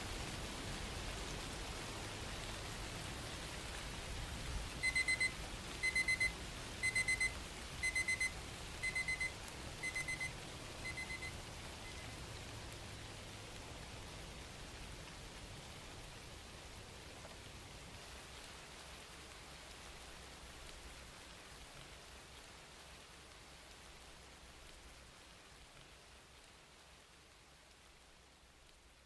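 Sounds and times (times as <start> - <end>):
steady rain: 0.0 - 29.0
digital timer alarm beeping: 4.8 - 12.0.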